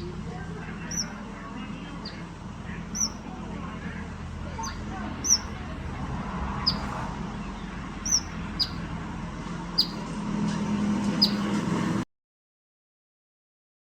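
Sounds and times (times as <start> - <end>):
small bird chirping: 0.0 - 3.3, 4.5 - 5.8, 6.6 - 8.9, 9.7 - 10.0, 11.2 - 11.5
steady low hum: 0.0 - 12.0.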